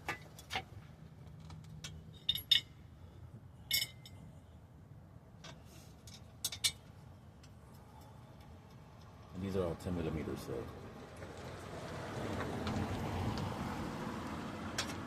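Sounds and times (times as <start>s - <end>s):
metal tools clinking: 1.8s - 2.8s, 3.7s - 4.2s.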